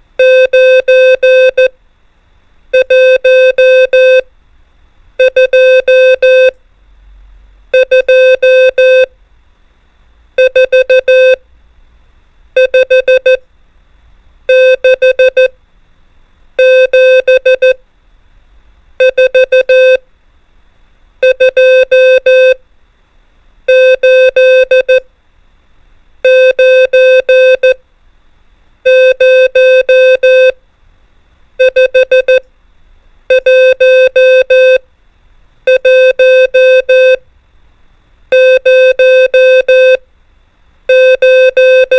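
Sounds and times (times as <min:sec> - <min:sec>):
morse code beeps: 0:00.2 - 0:01.7, 0:02.8 - 0:04.3, 0:05.2 - 0:06.6, 0:07.8 - 0:09.1, 0:10.4 - 0:11.4, 0:12.6 - 0:13.4, 0:14.5 - 0:15.5, 0:16.6 - 0:17.8, 0:19.0 - 0:20.0, 0:21.2 - 0:22.6, 0:23.7 - 0:25.0, 0:26.2 - 0:27.8, 0:28.9 - 0:30.6, 0:31.6 - 0:32.4, 0:33.3 - 0:34.8, 0:35.7 - 0:37.2, 0:38.3 - 0:40.0, 0:40.9 - 0:41.9.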